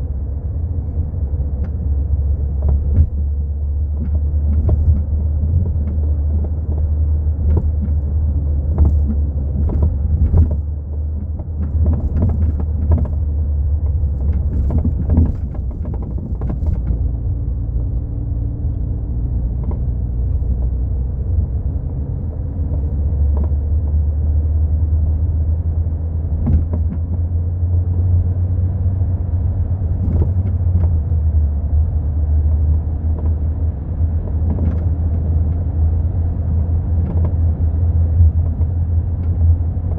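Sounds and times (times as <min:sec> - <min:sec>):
car road rumble: 0:00.0 - 0:39.9.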